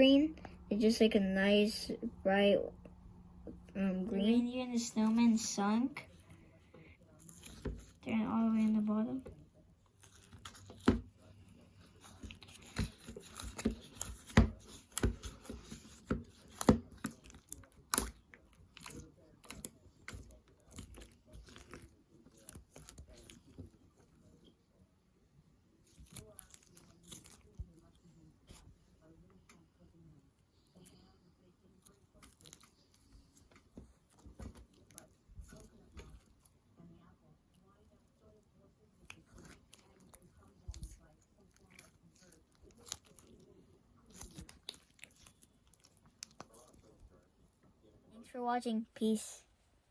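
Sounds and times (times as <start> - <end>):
slime clicking and crackling: 7.2 - 23.8, 25.8 - 28.0, 31.8 - 36.5, 39.0 - 47.2
slime squished by hand: 39.0 - 47.0.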